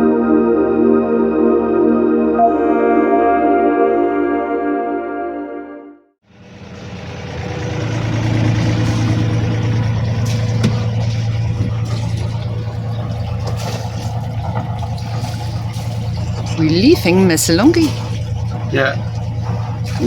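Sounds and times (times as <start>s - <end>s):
boat engine humming: 6.3s - 20.0s.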